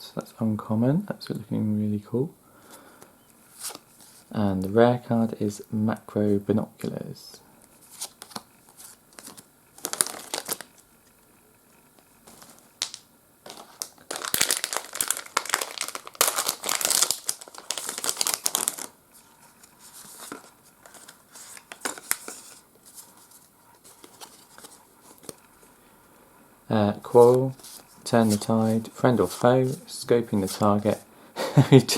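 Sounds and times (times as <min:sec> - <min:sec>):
cards pulled out rustling: 0:07.8 - 0:11.2, 0:12.0 - 0:25.6, 0:27.1 - 0:31.0
foil wrapper tearing and crinkling: 0:09.8 - 0:10.8, 0:12.8 - 0:19.0.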